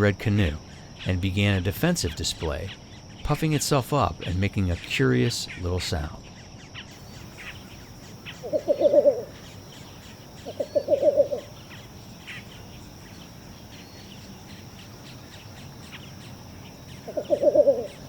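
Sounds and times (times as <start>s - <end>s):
faint chirps: 0.0s - 18.0s
high insect buzz: 0.0s - 18.0s
bird low clucking calls: 6.8s - 18.0s.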